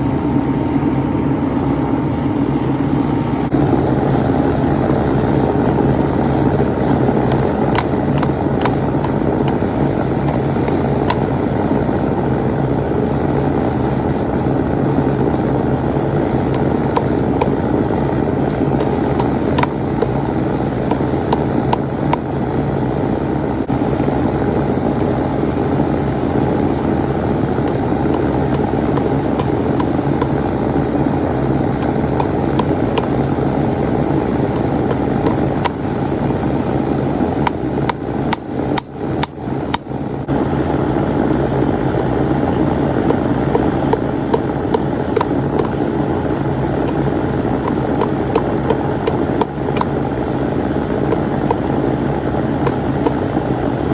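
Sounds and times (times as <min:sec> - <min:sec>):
steady low hum: 0:00.0 - 0:53.9
hammer striking steel on anvil: 0:43.6 - 0:45.8.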